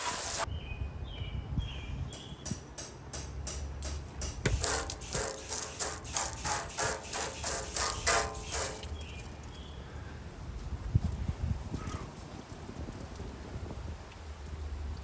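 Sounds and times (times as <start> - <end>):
scrubbing porcelain sink: 4.5 - 9.5.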